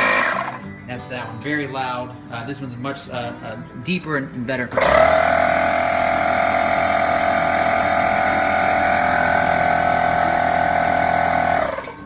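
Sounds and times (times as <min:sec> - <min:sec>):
air compressor running: 0:00.0 - 0:00.7, 0:04.7 - 0:12.0.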